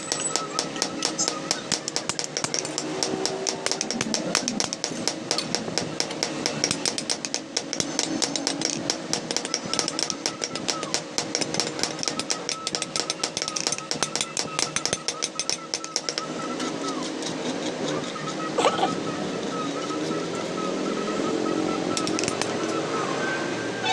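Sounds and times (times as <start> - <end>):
hammering on hot steel: 0.0 - 18.1
wavering whine: 7.8 - 23.9.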